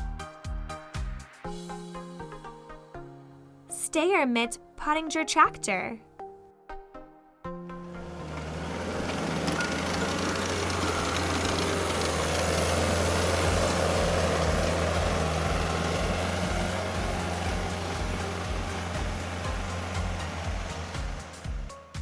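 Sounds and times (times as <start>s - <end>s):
tractor engine running: 8.0s - 21.7s.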